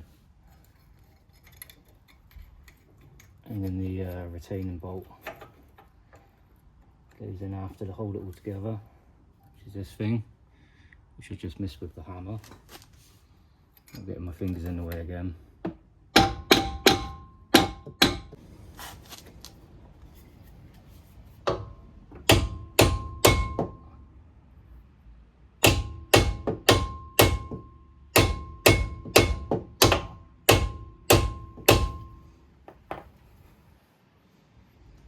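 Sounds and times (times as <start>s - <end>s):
hammer tapping metal pin: 16.2s - 18.4s, 21.5s - 23.8s, 25.6s - 32.2s.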